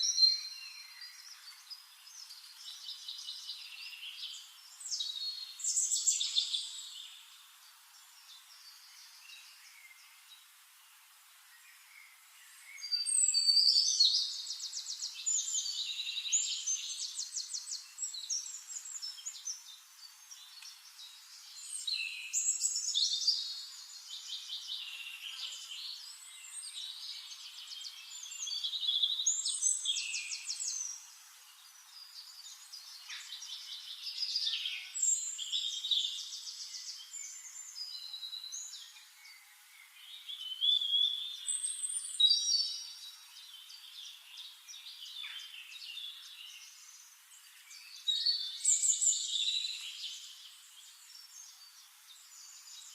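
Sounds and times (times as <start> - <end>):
songbird trilling and whistling: 12.8 - 18.5.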